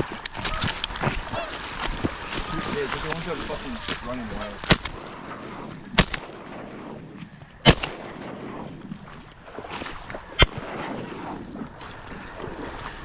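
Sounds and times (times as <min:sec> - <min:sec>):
shotgun shots: 0:04.6 - 0:07.0, 0:07.6 - 0:08.7, 0:10.4 - 0:11.2.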